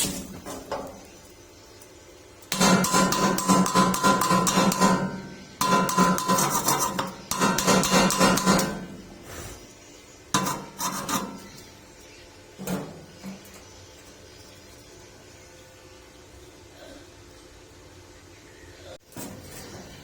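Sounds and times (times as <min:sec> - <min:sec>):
knocks on metal pipe: 0:02.5 - 0:08.9
rapid tapping on steel pipe: 0:02.5 - 0:09.0.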